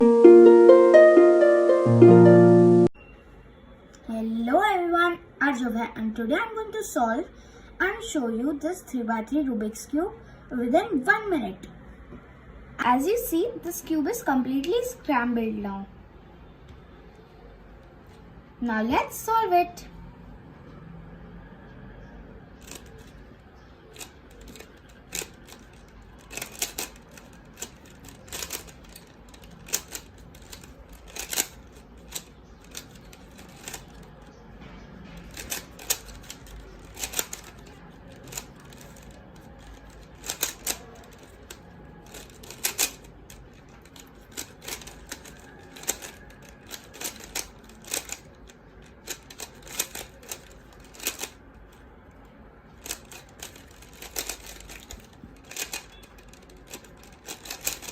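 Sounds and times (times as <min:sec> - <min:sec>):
puzzle cube clicking: 0:22.6 - 0:23.2, 0:23.9 - 0:34.2, 0:35.2 - 0:51.8, 0:52.8 - 0:57.9.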